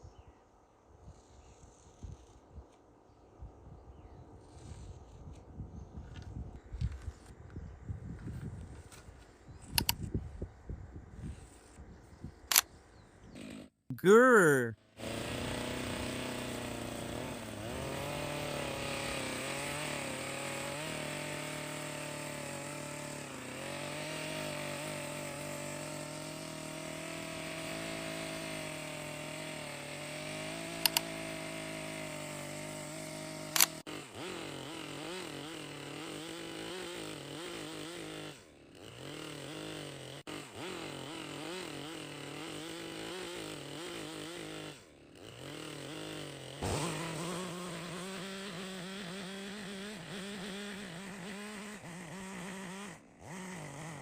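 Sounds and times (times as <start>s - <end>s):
sharp clicks: 9.7s - 10.0s, 30.8s - 31.1s, 33.5s - 33.8s
chainsaw cutting: 13.3s - 54.0s.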